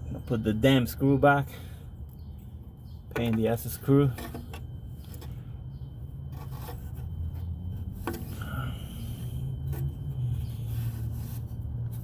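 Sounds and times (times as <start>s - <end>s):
steady low rumble: 4.6s - 12.0s
hands and tool scraping: 6.3s - 12.0s.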